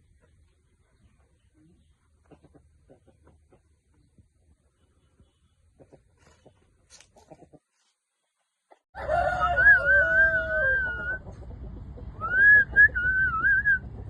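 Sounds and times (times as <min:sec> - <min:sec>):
rooster crowing: 0:09.0 - 0:11.2.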